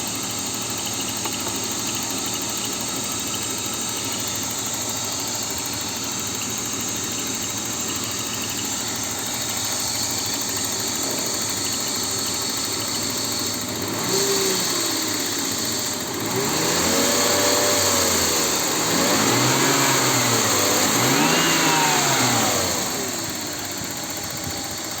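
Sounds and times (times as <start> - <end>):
car engine idling: 0.0 - 25.0
engine ticking: 0.0 - 25.0
car engine revving: 3.6 - 23.5.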